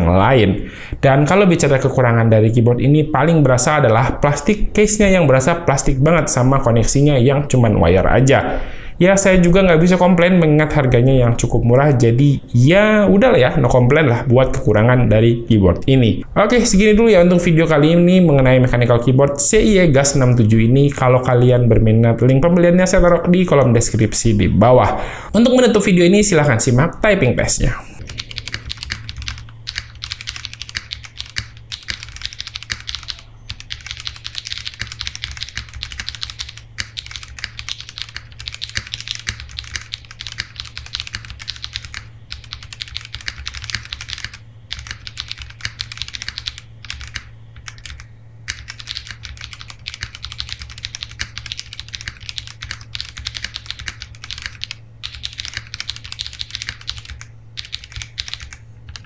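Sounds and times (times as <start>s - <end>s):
steady low hum: 0.0s - 59.0s
mechanical keyboard typing: 28.0s - 59.0s.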